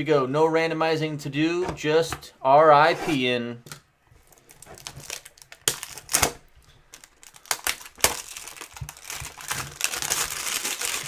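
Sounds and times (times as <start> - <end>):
wrapper crinkling: 4.2 - 11.0
card wrappers torn open: 4.4 - 11.0.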